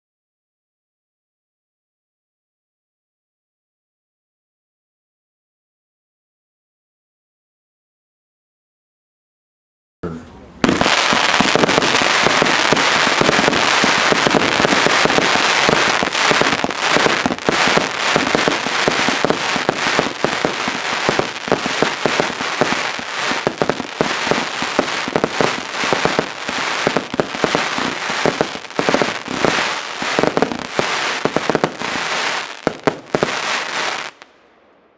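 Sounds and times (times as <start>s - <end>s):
fireworks crackling and banging: 10.5s - 34.3s.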